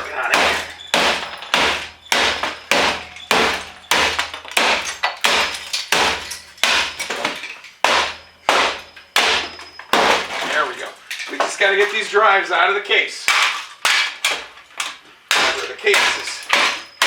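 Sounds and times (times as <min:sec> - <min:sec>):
hammer pounding metal case: 0:00.0 - 0:10.4.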